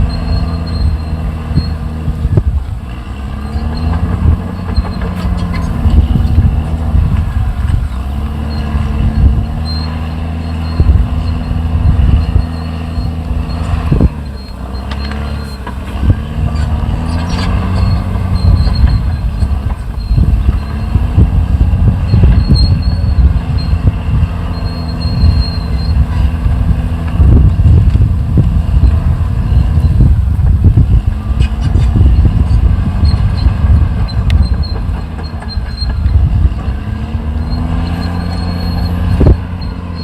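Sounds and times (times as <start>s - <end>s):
bulldozer diesel engine: 0.0s - 40.0s
thin high squeal: 8.4s - 15.6s, 22.0s - 26.4s, 37.3s - 40.0s
steel tracks clanking: 31.4s - 40.0s.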